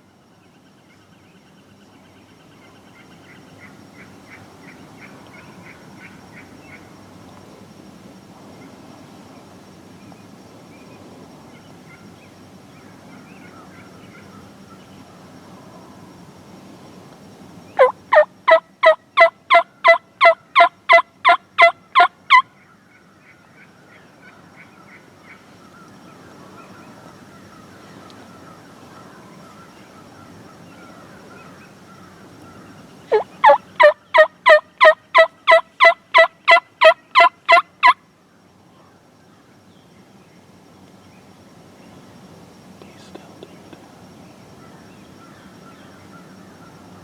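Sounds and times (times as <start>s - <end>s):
turkey yelps: 17.8s - 22.4s, 33.1s - 38.0s.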